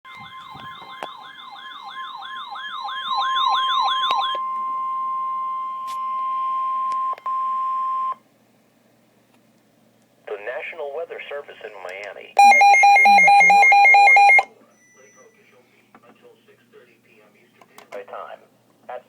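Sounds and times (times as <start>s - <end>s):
warbling siren-like alert: 0.1s - 6.9s, 12.4s - 14.5s
steady warning alarm tone: 0.1s - 8.2s, 12.4s - 15.3s.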